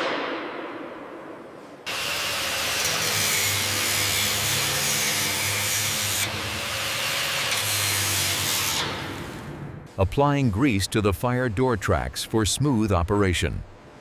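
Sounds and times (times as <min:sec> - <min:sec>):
power tool humming: 0:01.9 - 0:09.4.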